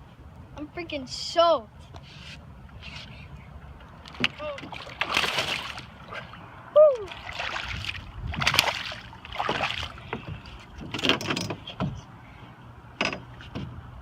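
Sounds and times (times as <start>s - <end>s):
water splashing around boat: 2.1s - 14.0s
wind on microphone: 6.1s - 12.1s.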